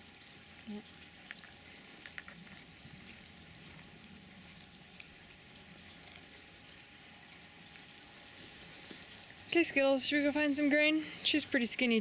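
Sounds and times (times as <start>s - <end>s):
light rain pattering: 0.0s - 12.0s
small ticks: 0.1s - 2.8s.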